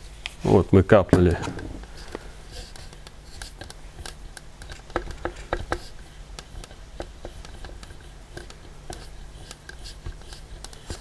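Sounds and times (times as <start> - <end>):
steady low hum: 0.0 - 11.0
hands clicking plastic parts: 2.8 - 9.8.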